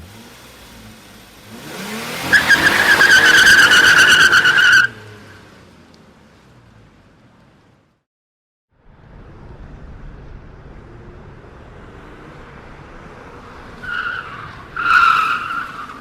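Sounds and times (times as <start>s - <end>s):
car tyres screeching: 0.0s - 5.8s, 9.4s - 16.0s
car engine revving: 0.0s - 7.0s
low rumble: 8.7s - 13.8s.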